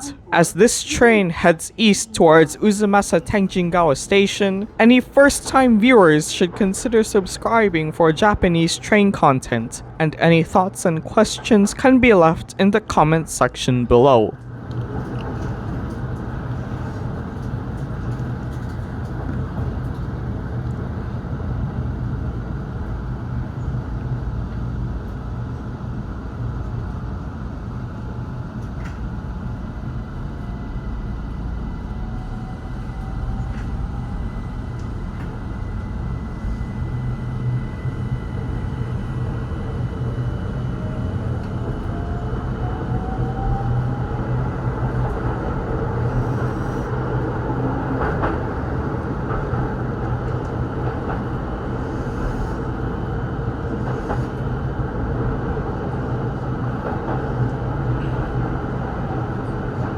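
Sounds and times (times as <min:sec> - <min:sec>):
train wheels and motors rumbling: 0:00.0 - 0:13.7, 0:14.3 - 0:59.9
train motor whine: 0:28.5 - 0:54.7.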